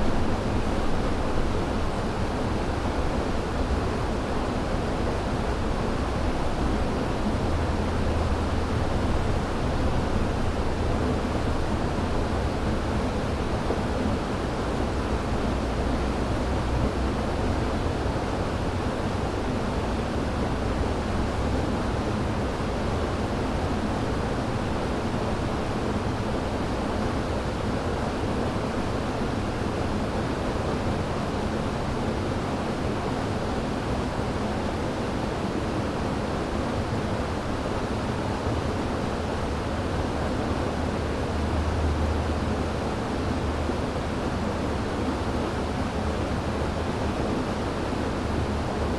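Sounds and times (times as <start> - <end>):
river water rushing: 45.2 - 48.9.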